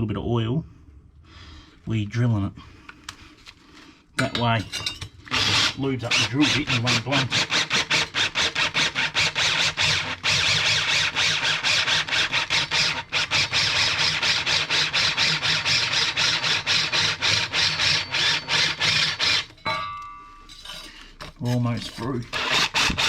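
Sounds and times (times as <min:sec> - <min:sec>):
electric drill boring through metal: 0:05.3 - 0:19.7, 0:22.3 - 0:23.0.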